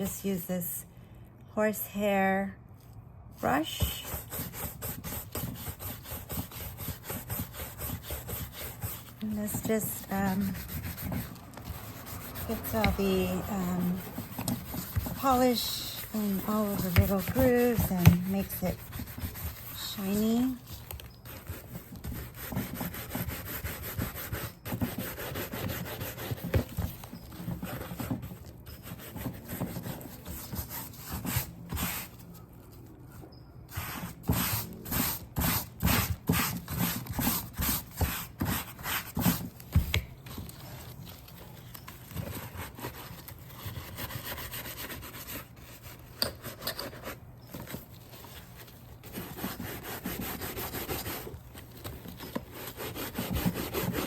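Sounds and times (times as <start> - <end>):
brush scratching over leather: 3.5 - 32.3.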